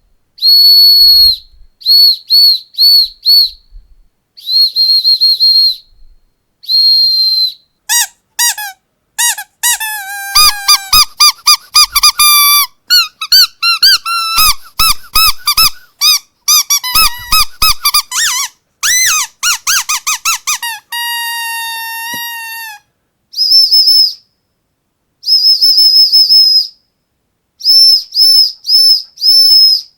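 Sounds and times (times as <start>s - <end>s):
squeaky dog toy squeaks: 7.9s - 22.9s.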